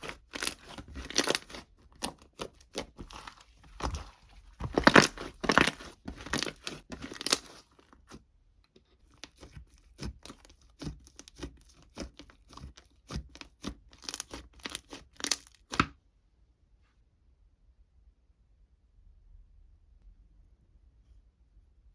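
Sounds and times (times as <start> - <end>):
crinkly material rustling: 0.0 - 8.2, 9.0 - 15.8.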